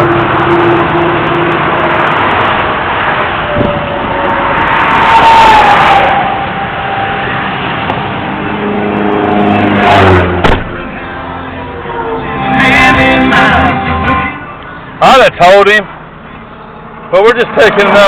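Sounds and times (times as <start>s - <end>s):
highway traffic passing: 0.0s - 18.0s
short knock: 10.4s - 10.7s.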